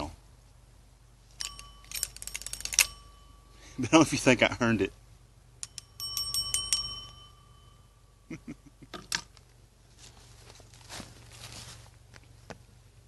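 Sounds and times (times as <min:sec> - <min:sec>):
small metal bell rung rapidly: 0:05.6 - 0:08.0.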